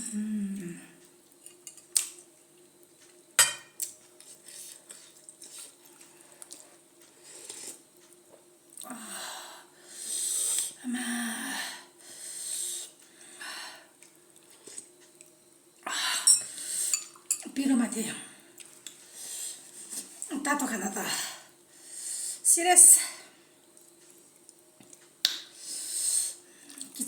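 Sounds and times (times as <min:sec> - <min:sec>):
sharp hissing breaths: 0:09.8 - 0:10.8, 0:12.0 - 0:13.0, 0:21.8 - 0:22.4, 0:25.6 - 0:26.4.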